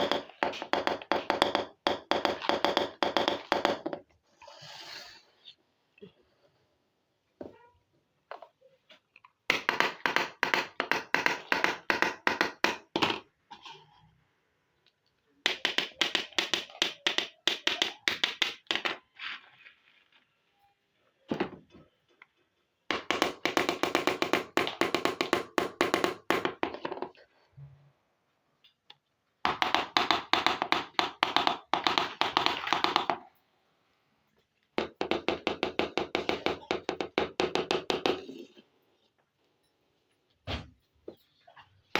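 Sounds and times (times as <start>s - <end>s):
plastic toy pieces tapping: 15.5s - 19.0s.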